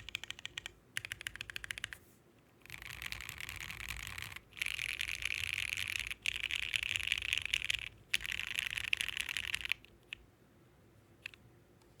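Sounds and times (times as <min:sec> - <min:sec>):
mechanical keyboard typing: 0:00.0 - 0:02.0, 0:02.6 - 0:10.2.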